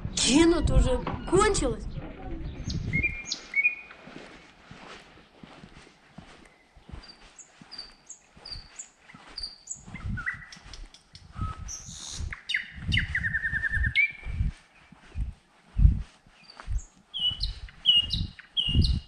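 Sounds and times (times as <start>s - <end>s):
dull low thumps: 0.0s - 3.3s, 9.8s - 19.0s
small birds singing: 0.0s - 19.0s.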